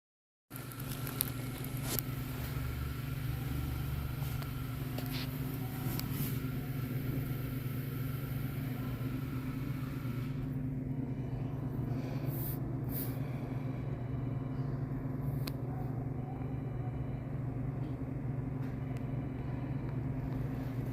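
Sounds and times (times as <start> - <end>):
car engine humming: 0.6 - 14.8.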